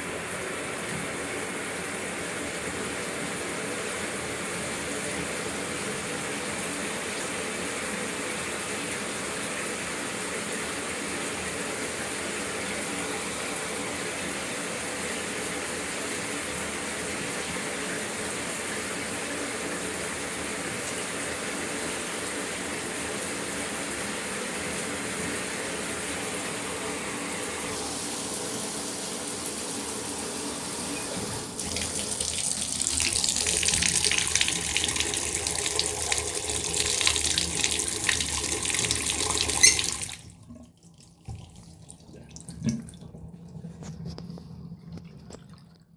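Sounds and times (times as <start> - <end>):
faucet running into bathtub: 27.6 - 44.2
shower spray hissing: 27.7 - 40.2.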